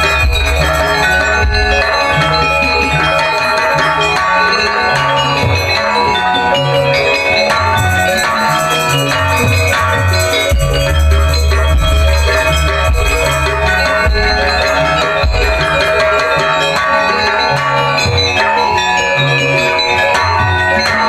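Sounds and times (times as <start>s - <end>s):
hand drum playing: 0.0s - 4.1s, 7.5s - 16.9s
booming bass line: 0.0s - 4.4s, 9.1s - 16.9s
melodic percussion ensemble: 0.0s - 21.0s.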